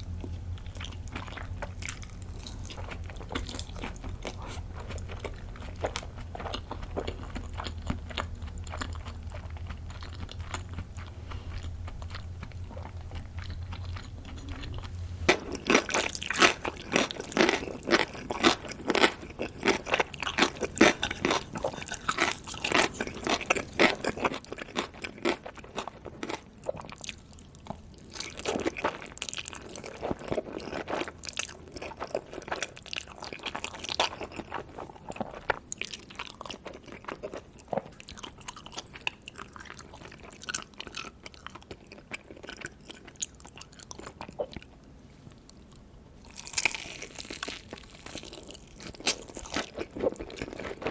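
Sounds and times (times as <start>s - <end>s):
person chewing noodles: 0.0s - 44.8s, 45.4s - 50.9s
low steady hum: 0.0s - 50.9s.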